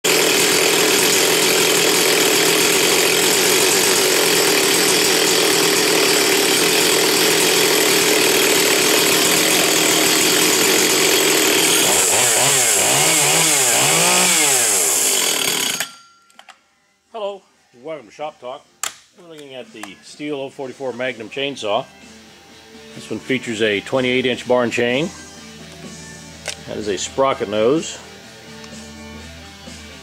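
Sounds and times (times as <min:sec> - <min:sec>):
chainsaw revving: 0:00.0 - 0:16.0.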